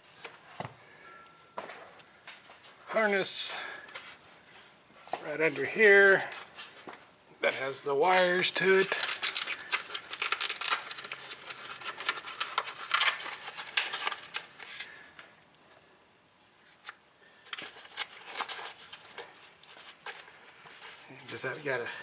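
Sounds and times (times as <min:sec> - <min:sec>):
hands handling plastic parts: 0:08.6 - 0:15.0, 0:16.7 - 0:21.6.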